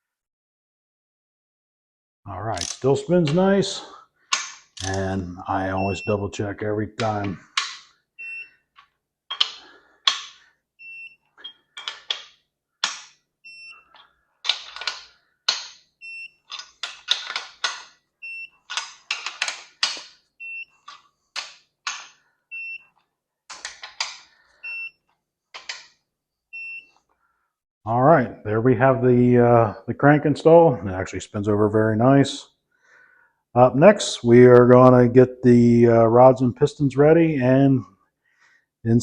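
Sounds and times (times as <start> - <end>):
torque wrench ratchet clicks: 2.6 - 2.8.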